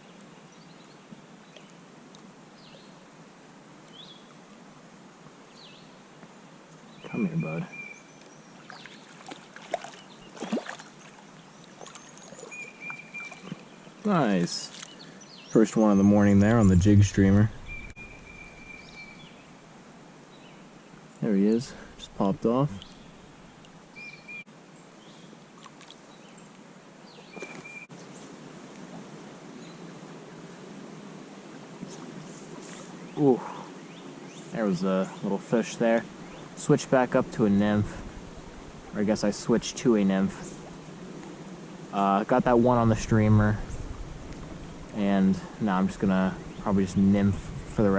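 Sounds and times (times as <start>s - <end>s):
water splashing and sloshing: 8.5s - 15.0s, 25.6s - 26.0s, 35.9s - 39.4s, 40.3s - 47.9s
bird whistling: 17.6s - 19.3s.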